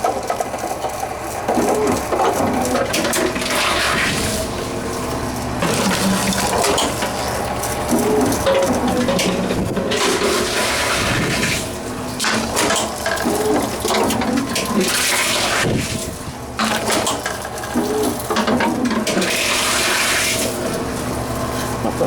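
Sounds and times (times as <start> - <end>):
vending machine mechanical rush: 0.0 - 22.0
containers clattering: 0.1 - 22.0.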